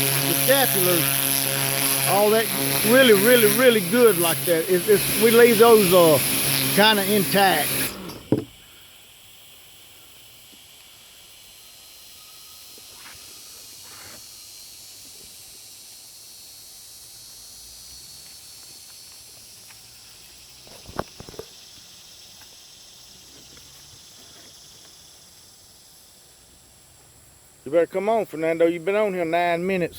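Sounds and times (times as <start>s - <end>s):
pressure washer water jet hissing: 0.0s - 15.1s
knocks: 8.3s - 8.5s.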